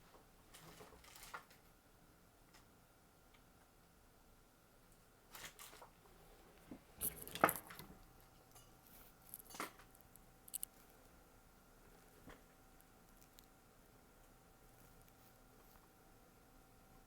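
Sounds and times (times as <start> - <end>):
clicks and scrapes of small parts: 7.0 - 11.1, 13.1 - 13.6.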